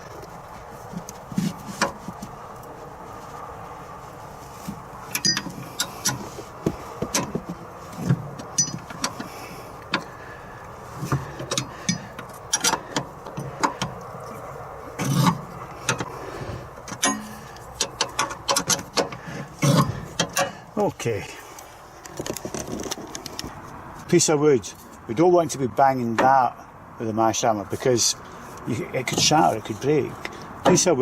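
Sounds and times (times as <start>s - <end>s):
tools and metal parts clinking: 5.1s - 6.2s, 8.4s - 9.3s, 11.1s - 14.0s, 16.8s - 20.7s.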